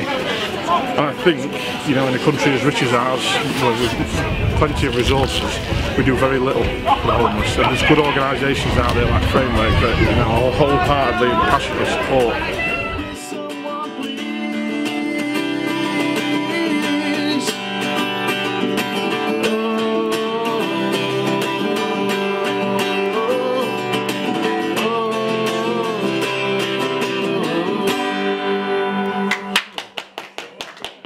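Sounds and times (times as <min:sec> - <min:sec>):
guitar music with wavering melody: 0:00.0 - 0:29.3.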